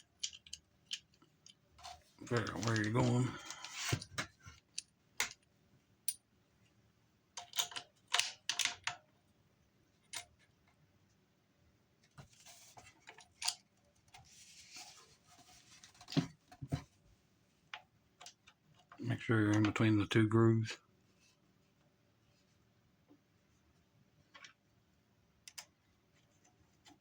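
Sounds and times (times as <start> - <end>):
metallic clicks and clinks: 0.0 - 1.6, 7.4 - 9.0
soft scrapes: 14.2 - 16.1.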